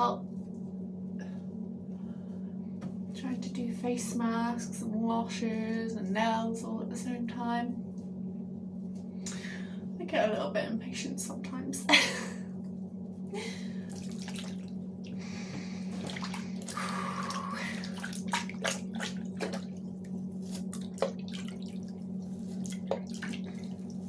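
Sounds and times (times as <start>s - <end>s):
low hum: 0.0s - 24.0s
splashes of face washing: 13.8s - 24.0s
water running into sink: 13.9s - 14.8s, 15.9s - 19.8s.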